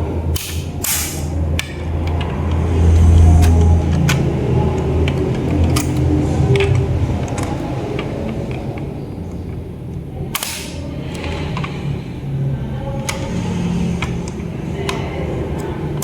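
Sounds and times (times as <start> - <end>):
low steady hum: 0.0 - 16.0
sharp snap: 0.4 - 1.3, 10.4 - 10.8
toy car handling clicks and taps: 0.4 - 11.8, 13.0 - 16.0.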